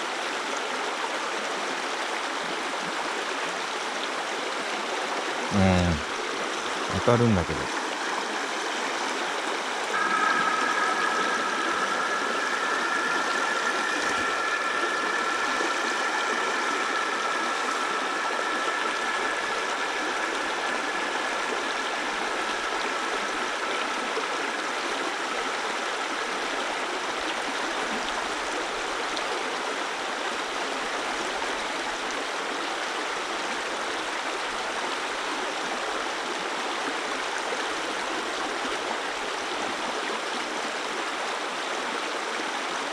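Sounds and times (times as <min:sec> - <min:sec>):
stream water rushing: 0:00.3 - 0:28.0
faint two-note tone: 0:09.9 - 0:25.1.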